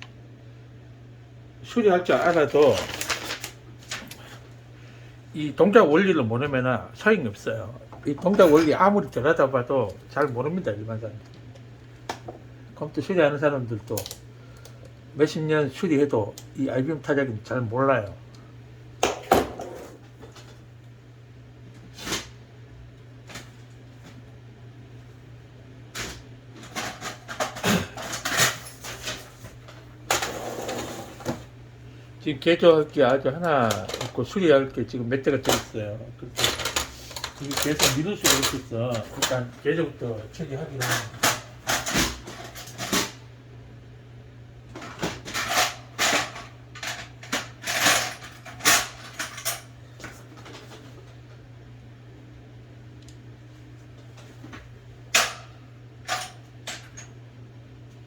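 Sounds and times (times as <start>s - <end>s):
steady low hum: 0.0s - 58.0s
tools and metal parts clattering: 26.6s - 29.5s, 36.4s - 39.5s, 44.8s - 49.7s.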